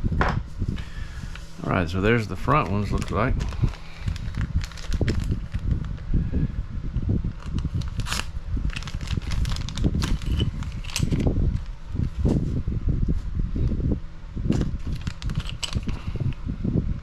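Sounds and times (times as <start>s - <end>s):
clicks and rustles of plastic parts: 2.4s - 6.0s, 7.4s - 12.2s, 14.5s - 16.4s.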